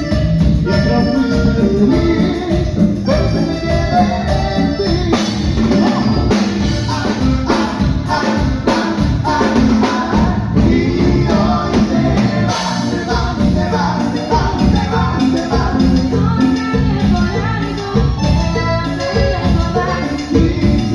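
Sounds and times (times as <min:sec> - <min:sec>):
live latin dance band: 0:00.0 - 0:20.9
person singing: 0:00.0 - 0:20.9.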